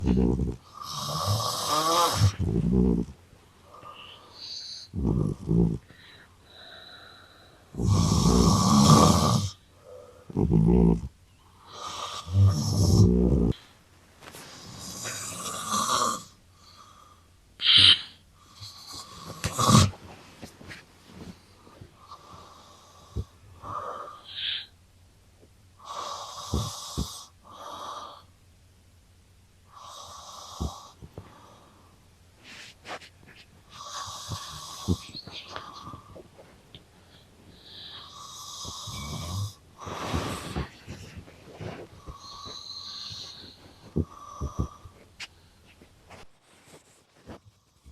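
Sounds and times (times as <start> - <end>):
cat snoring: 0.0 - 3.1, 3.8 - 6.0, 7.8 - 11.1, 11.7 - 13.6, 14.6 - 16.3, 17.6 - 20.0, 25.8 - 28.2, 29.7 - 31.0, 33.7 - 36.1, 37.6 - 45.0
man snoring: 0.0 - 3.1, 3.7 - 6.0, 7.8 - 11.1, 11.7 - 13.6, 14.7 - 16.3, 17.6 - 20.0, 25.8 - 28.2, 29.7 - 31.0, 33.8 - 36.2, 37.6 - 40.7, 42.0 - 44.9.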